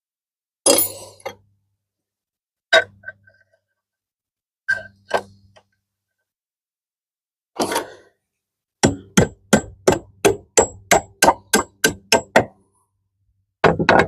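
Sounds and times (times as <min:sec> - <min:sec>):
hammer striking a nail: 0:08.8 - 0:12.6.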